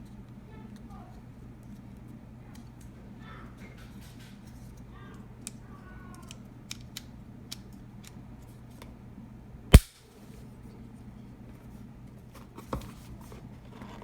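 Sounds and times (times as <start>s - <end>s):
packaging clicks and snips: 9.8s - 10.0s
sharp loud knock: 9.8s - 10.0s.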